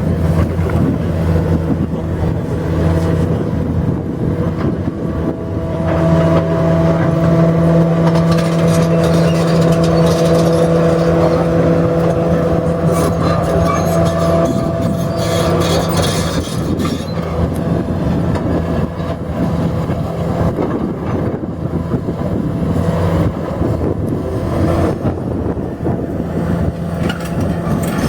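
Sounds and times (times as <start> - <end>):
heavy diesel engine running: 0.0 - 28.0.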